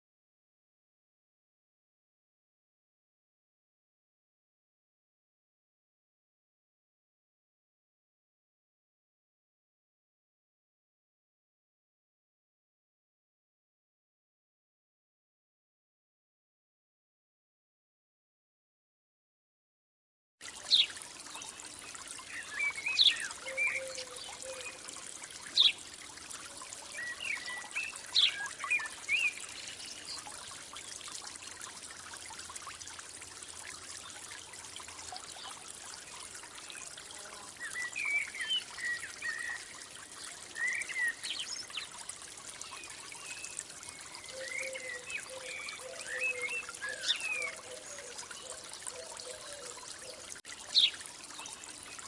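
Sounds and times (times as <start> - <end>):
trickling water: 20.4 - 52.0
birds chirping: 20.7 - 25.9, 26.7 - 30.3
lower warbling bird call: 22.3 - 24.9, 25.6 - 25.8, 26.5 - 30.1, 43.2 - 51.0.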